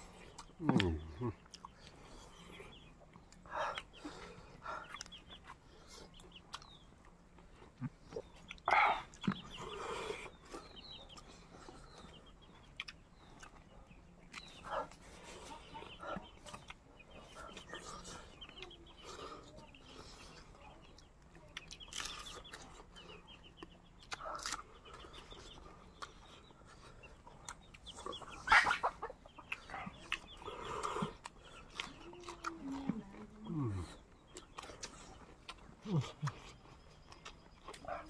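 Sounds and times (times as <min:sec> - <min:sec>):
chickens clucking: 0:00.0 - 0:38.0.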